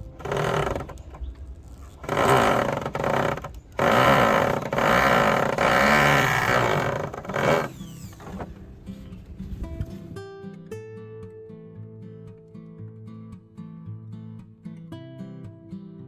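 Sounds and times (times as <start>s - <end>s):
small engine revving: 0.0s - 8.6s.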